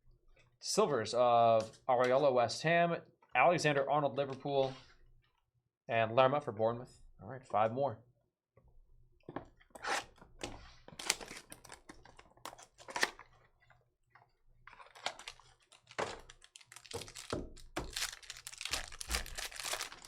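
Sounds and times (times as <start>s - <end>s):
cards and packaging rustling: 10.0s - 13.7s, 14.6s - 20.0s.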